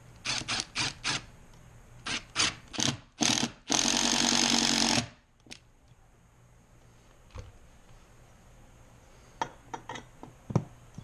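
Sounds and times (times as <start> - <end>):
power drill driving a screw: 0.2 - 1.2, 2.0 - 5.2.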